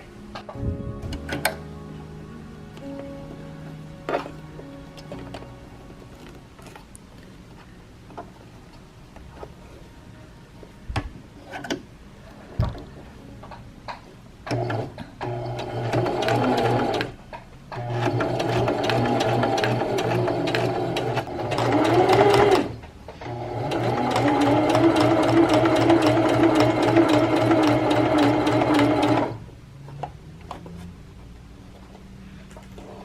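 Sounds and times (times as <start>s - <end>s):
sewing machine stitching: 14.5s - 17.2s, 17.8s - 29.4s.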